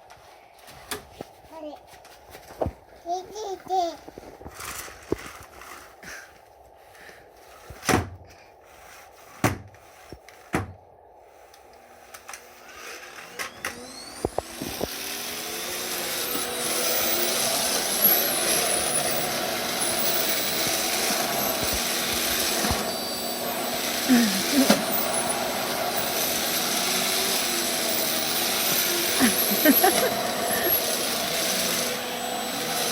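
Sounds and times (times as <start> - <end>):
vacuum cleaner motor running: 11.3 - 32.9.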